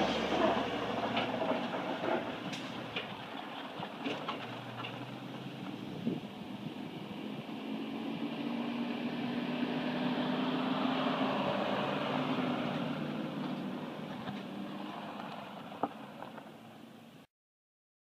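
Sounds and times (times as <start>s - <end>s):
vehicle engine running: 0.0s - 7.6s.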